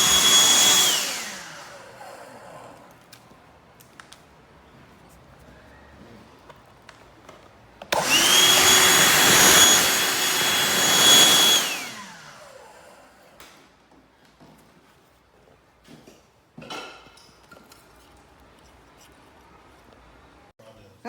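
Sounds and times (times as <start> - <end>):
handheld vacuum whining: 0.0 - 3.2, 7.8 - 13.6.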